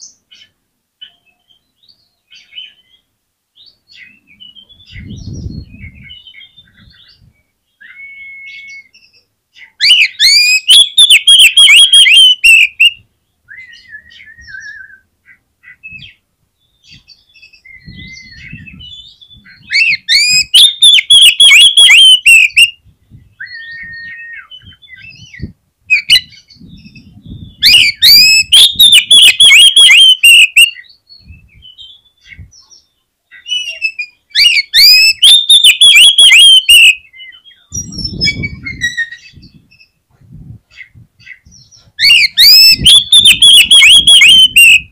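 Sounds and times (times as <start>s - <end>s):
bird singing rapid high notes: 9.8s - 13.0s, 17.8s - 22.8s, 23.4s - 31.5s, 33.5s - 39.6s, 42.0s - 44.9s.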